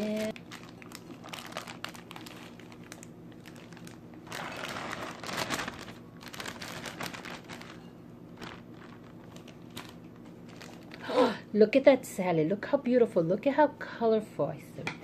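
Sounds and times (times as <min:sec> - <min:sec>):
plastic bag crinkling: 0:00.0 - 0:11.3.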